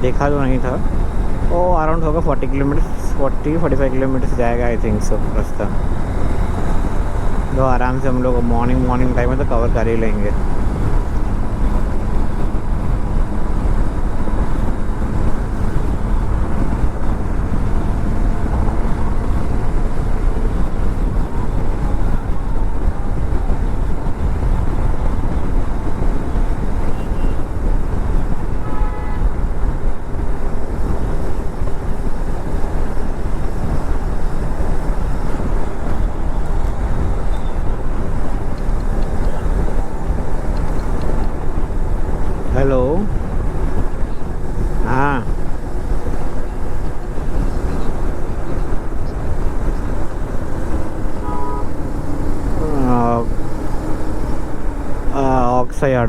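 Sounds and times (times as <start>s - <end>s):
road and wind noise: 0.0s - 56.0s
motorcycle engine running: 4.9s - 55.3s
horn toot: 28.6s - 29.4s, 51.2s - 51.9s.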